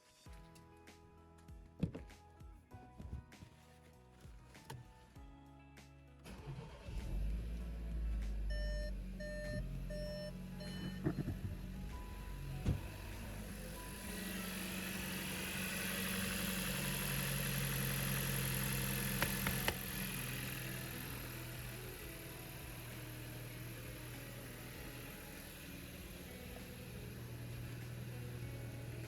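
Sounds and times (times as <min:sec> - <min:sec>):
car engine idling: 0:06.3 - 0:29.0
sharp clicks: 0:19.1 - 0:20.0.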